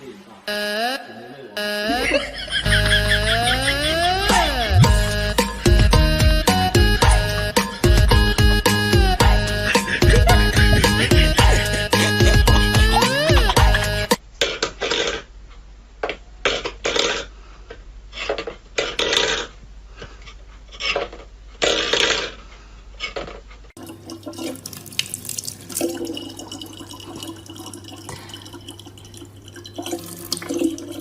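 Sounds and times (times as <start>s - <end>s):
low hum: 1.9s - 8.5s
water splashing in a sink: 23.8s - 31.0s.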